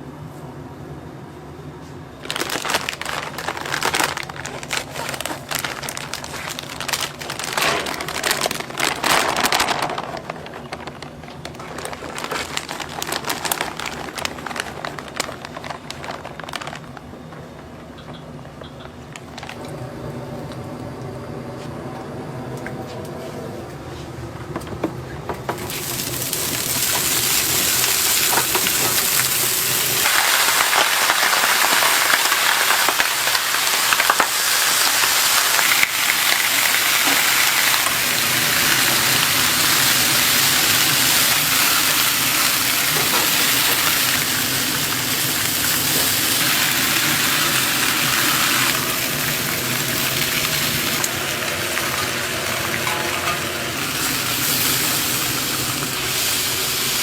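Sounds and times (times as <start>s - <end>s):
food sizzling in hot oil: 25.6s - 57.0s.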